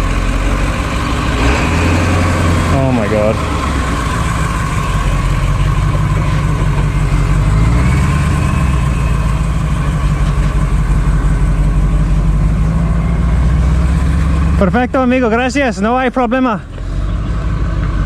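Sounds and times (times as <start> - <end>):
bus diesel engine running: 0.0 - 18.0.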